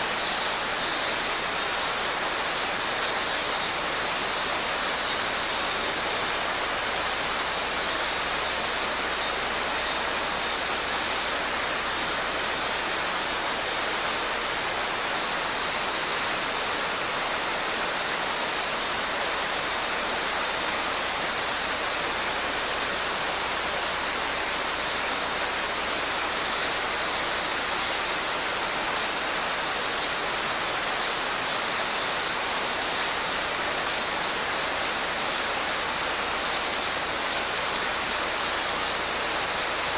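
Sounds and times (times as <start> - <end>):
cicada song: 0.0 - 39.9
mountain stream rushing: 0.0 - 39.9.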